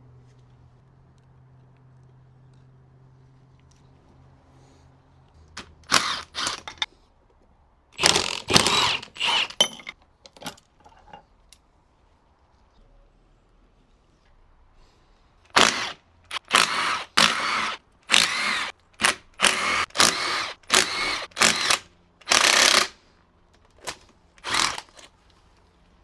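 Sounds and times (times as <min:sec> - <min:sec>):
power tool whirring bursts: 0:05.8 - 0:06.8, 0:08.0 - 0:09.6, 0:15.5 - 0:23.0, 0:24.4 - 0:25.0.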